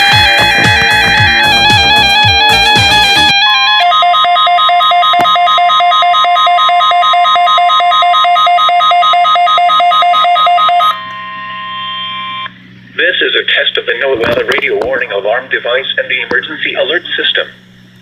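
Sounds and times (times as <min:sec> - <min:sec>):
rapid high-low alarm beeping: 0:00.0 - 0:12.6
steady warning alarm tone: 0:00.0 - 0:13.3.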